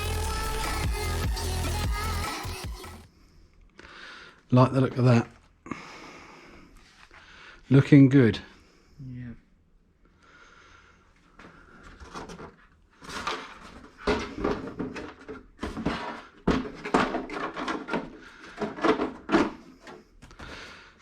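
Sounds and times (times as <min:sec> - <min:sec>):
packaging rustling and knocking: 0:12.0 - 0:20.4.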